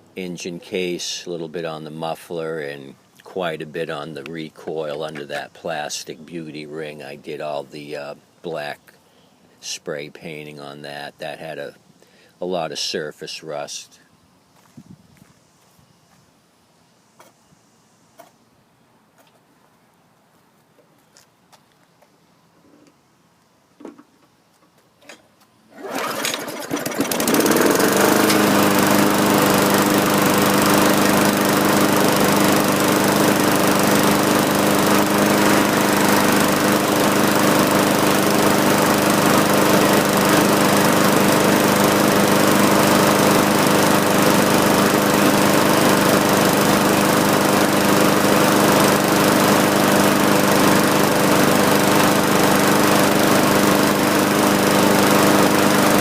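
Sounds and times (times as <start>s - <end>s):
lawn mower engine running: 25.7s - 56.0s.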